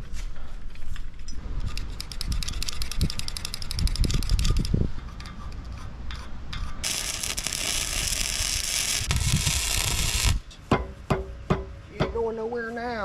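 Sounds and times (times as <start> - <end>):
metallic scraping and rattling: 5.0 - 10.6.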